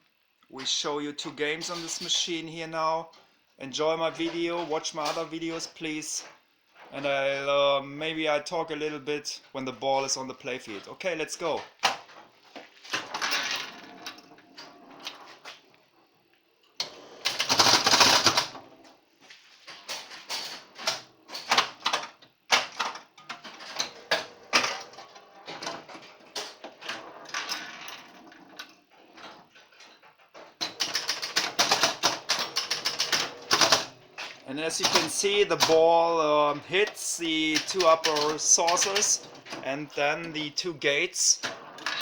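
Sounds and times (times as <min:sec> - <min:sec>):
pinball machine clicking and clattering: 0:01.6 - 0:02.2, 0:12.9 - 0:15.3, 0:16.8 - 0:18.7, 0:19.8 - 0:35.9, 0:36.7 - 0:39.6, 0:41.4 - 0:42.0.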